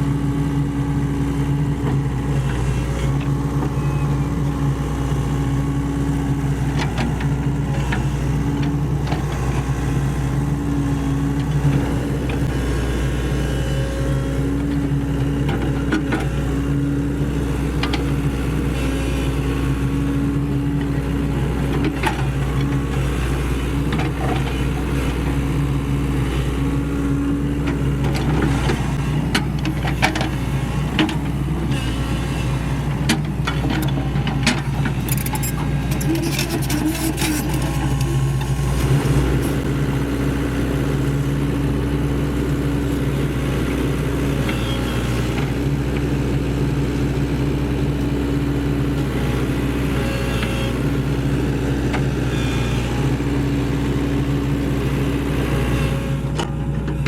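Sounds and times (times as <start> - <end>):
excavator diesel engine running: 0.0 - 57.0
bucket clattering and scraping soil: 36.0 - 38.0.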